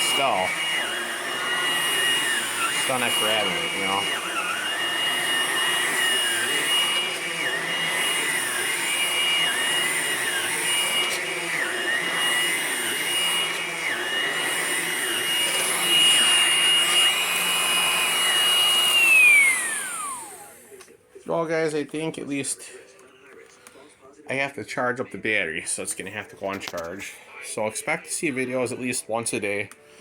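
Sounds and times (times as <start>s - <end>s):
cordless vacuum whining: 0.0s - 21.0s.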